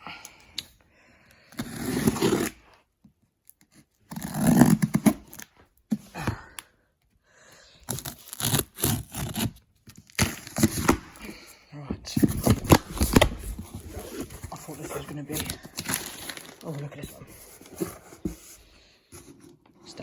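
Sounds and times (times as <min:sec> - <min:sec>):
cardboard boxes scraping and rustling: 0:01.6 - 0:02.6, 0:07.9 - 0:11.5, 0:12.1 - 0:20.0.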